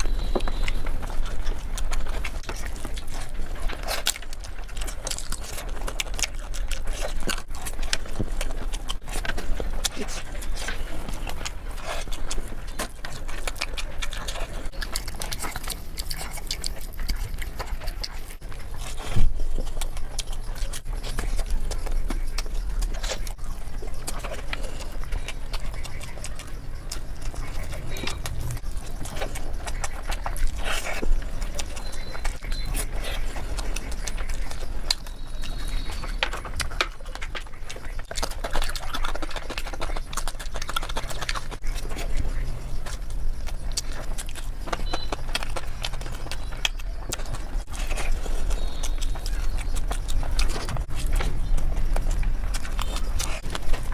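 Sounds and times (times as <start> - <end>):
person chewing and smacking food: 0.0 - 53.9
low hum: 7.4 - 36.4.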